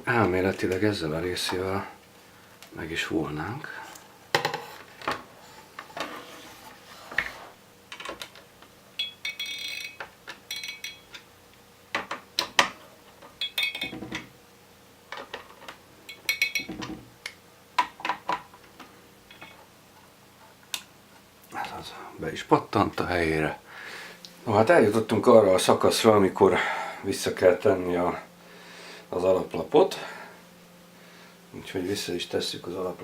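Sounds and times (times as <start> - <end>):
ringing metal clinks: 9.0 - 11.2, 13.4 - 14.0.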